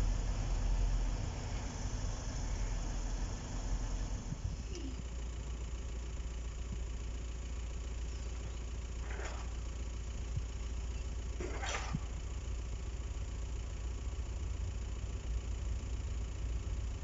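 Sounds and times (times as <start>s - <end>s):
low engine rumble: 0.0s - 17.0s
short hissing: 11.4s - 12.2s.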